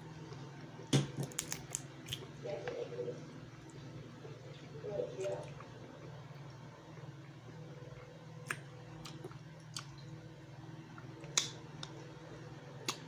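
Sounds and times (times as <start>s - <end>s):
low steady hum: 0.0s - 13.0s
crab shell cracking: 1.2s - 2.2s
quiet chewing: 3.6s - 7.1s, 7.9s - 10.2s.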